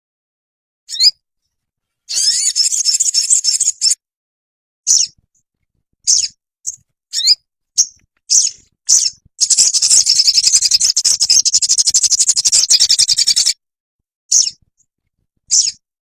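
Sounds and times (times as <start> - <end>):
bird rapid high trill: 2.1 - 4.0, 7.2 - 13.6
bird high sharp call notes: 7.1 - 13.6.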